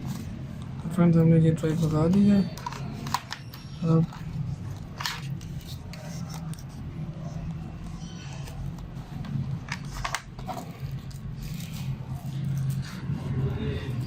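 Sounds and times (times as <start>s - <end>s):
laptop parts clicking: 1.8s - 6.8s, 8.3s - 12.9s.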